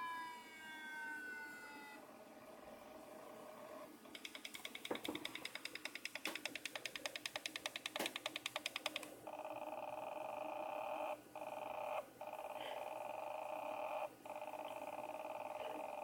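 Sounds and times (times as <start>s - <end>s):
rapid electronic clicks: 4.1s - 16.0s.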